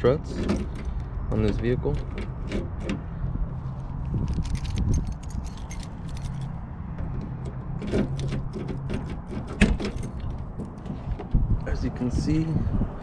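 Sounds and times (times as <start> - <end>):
clicks and clatter of hatch glass: 0.3 - 3.1, 4.2 - 11.4.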